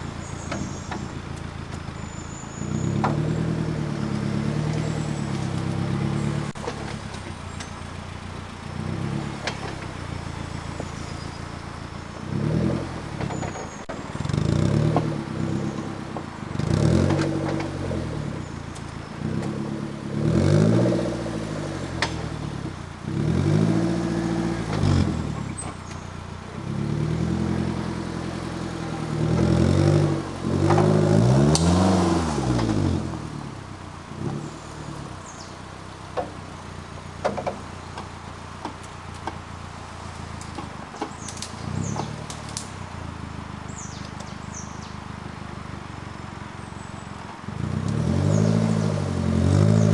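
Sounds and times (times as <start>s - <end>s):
engine revving: 2.1s - 7.0s, 8.6s - 35.5s, 41.2s - 45.0s, 47.5s - 49.9s
sharp knocks and clatters: 37.2s - 39.4s.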